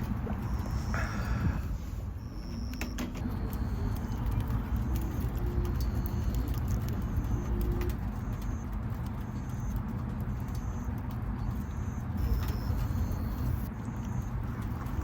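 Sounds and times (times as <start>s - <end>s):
low cooing call: 0.1s - 2.4s.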